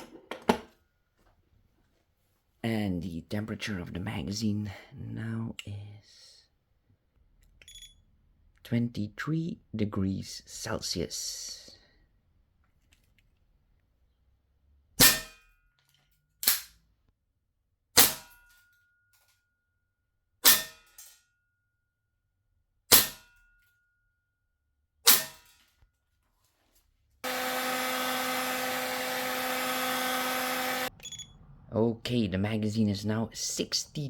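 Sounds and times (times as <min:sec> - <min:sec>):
heat gun blowing hiss: 0:27.2 - 0:30.9.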